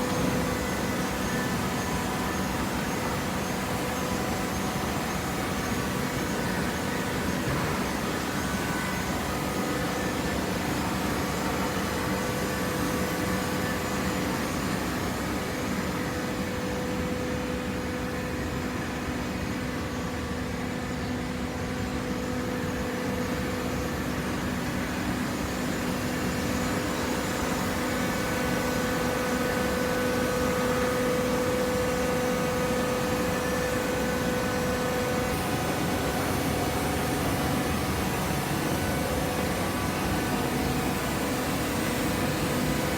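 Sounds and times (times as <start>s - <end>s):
hydraulic power unit humming: 0.0s - 42.9s.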